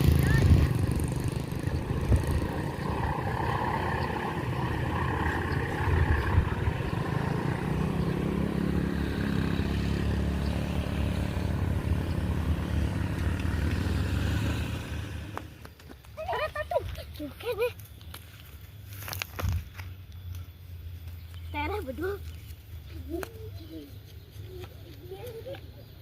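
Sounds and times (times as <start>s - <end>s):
passing vehicle rumble: 0.0s - 15.8s.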